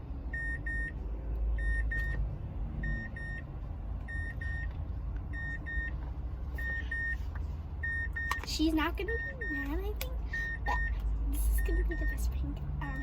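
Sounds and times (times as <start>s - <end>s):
low rumble inside car: 0.0s - 13.0s
car warning chime beeping: 0.3s - 2.2s, 2.8s - 3.5s, 4.1s - 4.7s, 5.3s - 6.0s, 6.6s - 7.2s, 7.8s - 13.0s.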